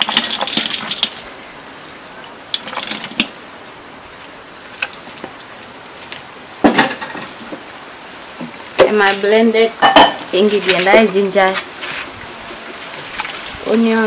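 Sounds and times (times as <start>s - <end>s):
faint steady hiss: 0.0s - 14.0s
kitchen clatter and rustling: 6.6s - 7.4s.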